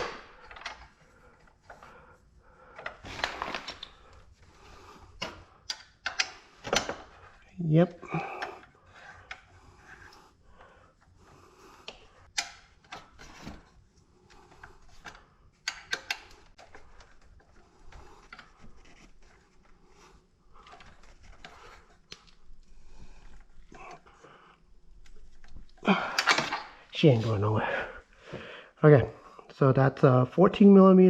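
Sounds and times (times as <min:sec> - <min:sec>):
tools clicking and knocking: 0:00.0 - 0:01.8, 0:05.2 - 0:07.4, 0:11.8 - 0:13.6, 0:14.5 - 0:19.1
rubbing and shuffling: 0:16.3 - 0:25.8.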